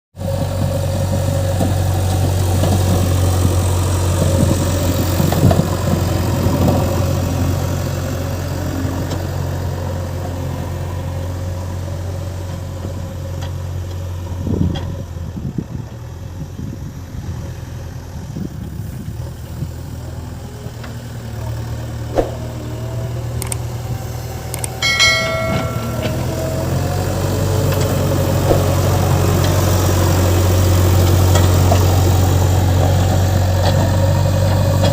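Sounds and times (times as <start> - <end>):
diesel engine running: 0.2 - 34.9
brief pitched tone: 24.8 - 26.8.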